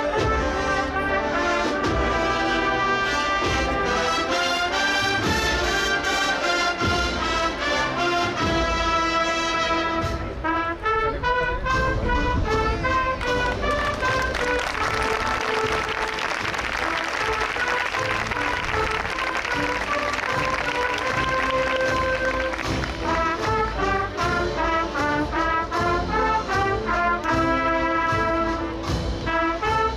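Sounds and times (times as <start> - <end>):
brass band playing a march: 0.0 - 29.9
drum beats: 11.8 - 29.9.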